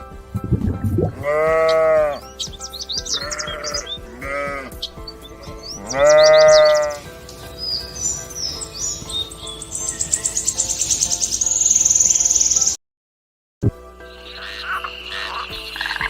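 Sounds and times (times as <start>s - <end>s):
sheep bleating: 1.1s - 2.3s, 3.1s - 4.8s, 5.4s - 7.1s.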